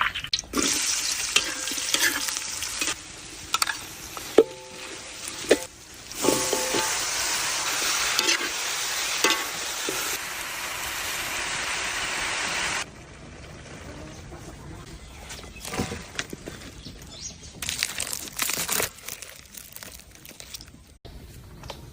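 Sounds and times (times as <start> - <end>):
food sizzling while frying: 0.0 - 12.9.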